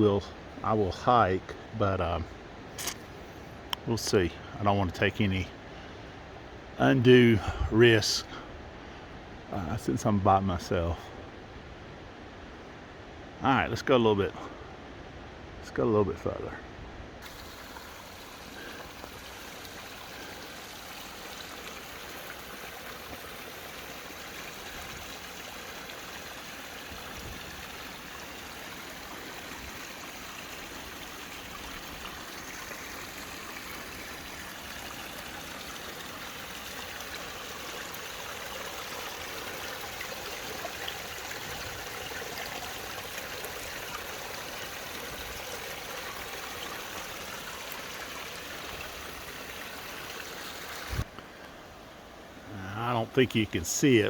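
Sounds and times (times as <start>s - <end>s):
stream rushing over rocks: 17.2s - 54.0s.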